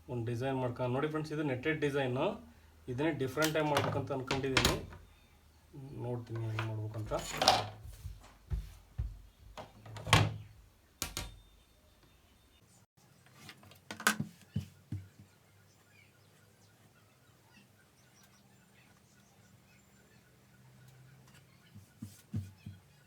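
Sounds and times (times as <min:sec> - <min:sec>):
short thumps and knocks: 0:06.3 - 0:10.4.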